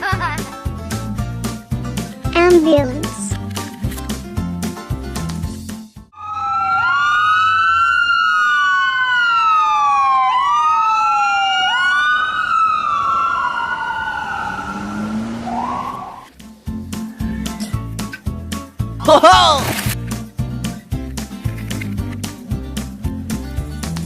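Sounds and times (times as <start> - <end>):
ambulance siren wailing: 6.2 - 16.3.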